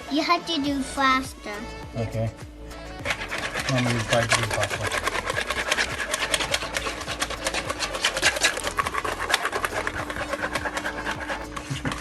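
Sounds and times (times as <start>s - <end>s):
whisk beating dough in a bowl: 2.9s - 12.0s.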